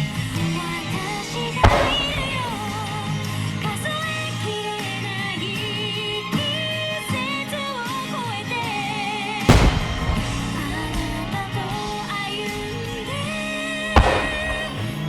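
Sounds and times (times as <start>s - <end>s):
firework shell bursting: 0.0s - 6.1s, 9.4s - 15.0s
pop song with singing: 0.0s - 15.0s.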